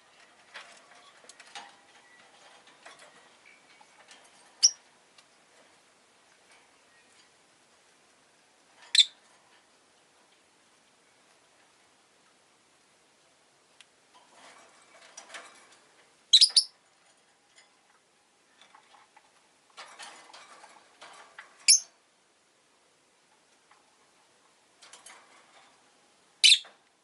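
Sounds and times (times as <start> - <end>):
faint scratchy rustling: 0.0 - 27.0
lovebird chirping: 8.9 - 9.2, 16.3 - 16.7, 21.7 - 21.9, 26.4 - 26.6.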